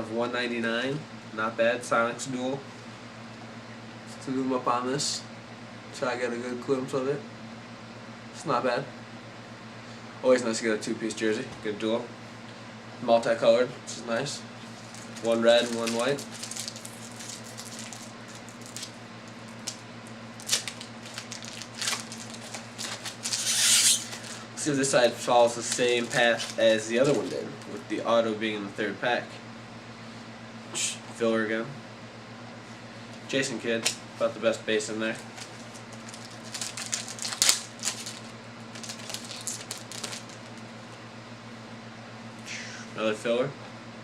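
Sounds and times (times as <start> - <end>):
steady electrical hum: 0.0 - 44.0
card pack wrapper crinkling: 14.6 - 19.8, 20.4 - 27.7, 35.2 - 40.6
wrapper tearing: 14.6 - 19.8, 20.4 - 24.4, 25.6 - 27.6, 35.2 - 40.6.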